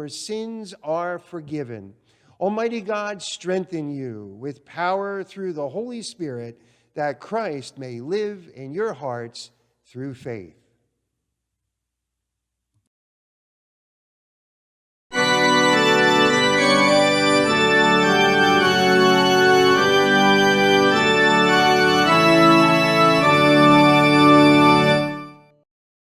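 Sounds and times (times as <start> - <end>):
organ playing sustained chords: 15.1 - 25.5.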